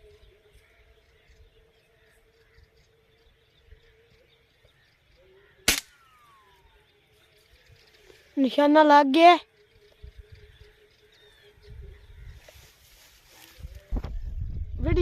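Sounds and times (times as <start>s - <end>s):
air rifle shot: 5.6s - 6.2s.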